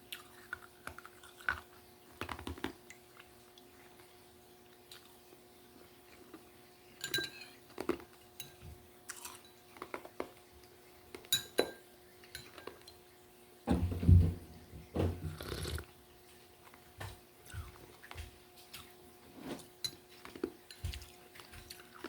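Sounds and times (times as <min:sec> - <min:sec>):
glassware and utensils clinking: 0:07.0 - 0:07.6, 0:11.3 - 0:12.8.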